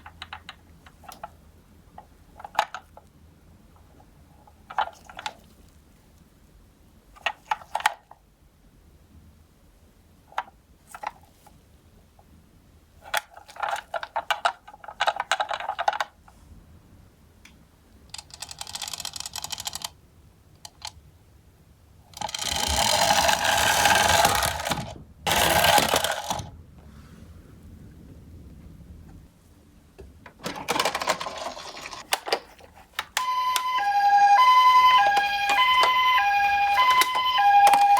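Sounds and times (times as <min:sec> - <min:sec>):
toy cars clattering on track: 0:13.1 - 0:16.1, 0:18.2 - 0:20.0, 0:22.2 - 0:26.5, 0:30.4 - 0:34.4.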